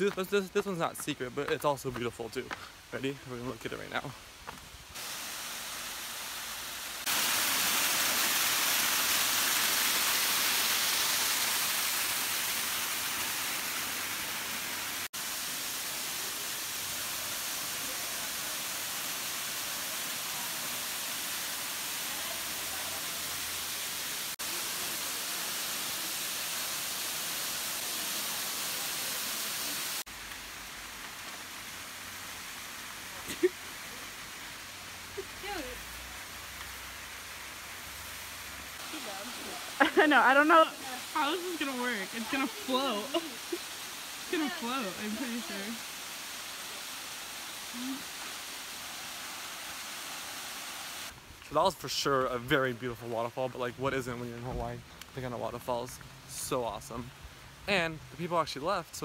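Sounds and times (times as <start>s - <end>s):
waterfall rushing: 5.0s - 51.2s.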